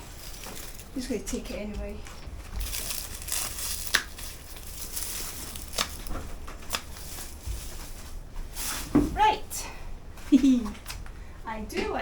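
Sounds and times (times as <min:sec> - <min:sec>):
potato plant rustling and tearing: 0:00.0 - 0:08.8.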